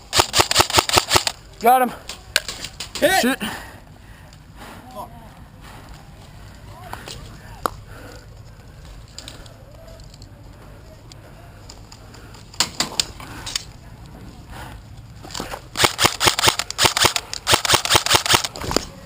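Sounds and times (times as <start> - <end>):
airsoft guns firing: 0.0 - 1.4, 15.8 - 18.6.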